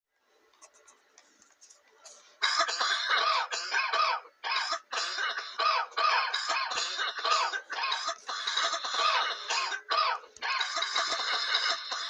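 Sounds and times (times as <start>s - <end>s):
person coughing harshly: 2.4s - 12.0s.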